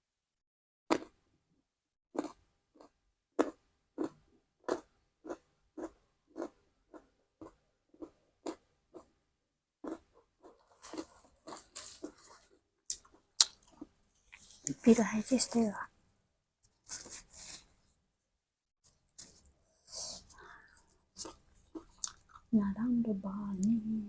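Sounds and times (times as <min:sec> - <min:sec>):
chewing food: 0:02.2 - 0:09.1, 0:09.8 - 0:14.8, 0:20.1 - 0:22.5.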